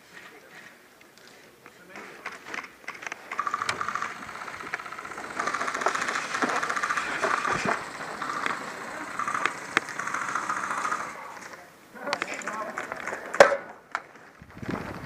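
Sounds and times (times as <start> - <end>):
sharp cracks: 2.2 - 14.1
airsoft gun firing full-auto: 3.0 - 11.3.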